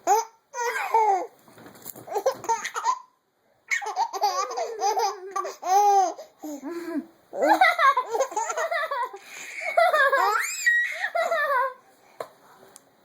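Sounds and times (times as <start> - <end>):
baby laughing: 2.1 - 3.1, 3.7 - 6.6, 7.4 - 11.8.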